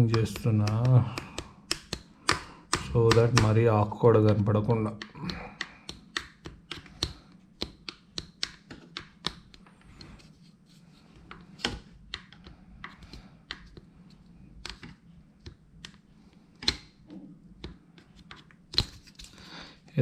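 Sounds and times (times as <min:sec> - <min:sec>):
plastic scale tapping putty: 0:00.0 - 0:10.1.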